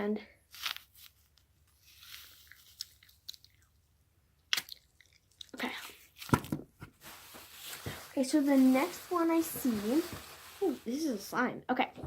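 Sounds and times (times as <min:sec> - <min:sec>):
rustling: 0:00.5 - 0:03.7, 0:05.8 - 0:11.4
crinkling and crunching crackles: 0:00.5 - 0:11.5.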